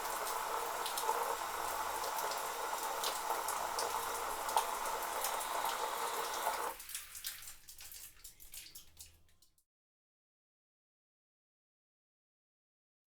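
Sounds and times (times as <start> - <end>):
shower water spraying: 0.0 - 8.7
water dripping and splashing: 0.0 - 9.6.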